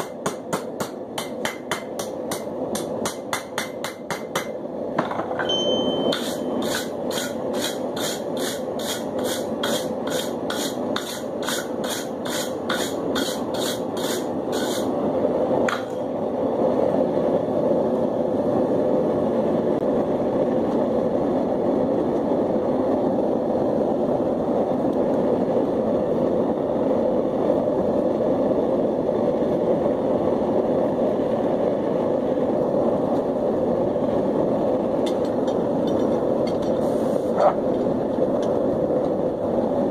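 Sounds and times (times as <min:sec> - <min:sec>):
hammer striking steel on anvil: 0:00.0 - 0:14.8
forge burner rushing: 0:00.0 - 0:39.9.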